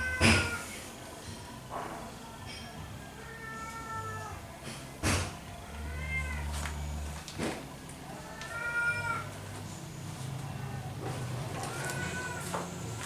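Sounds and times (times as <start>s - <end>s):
cat meowing: 0.0s - 0.8s, 3.2s - 4.4s, 5.6s - 6.6s, 8.2s - 9.3s, 11.6s - 12.7s.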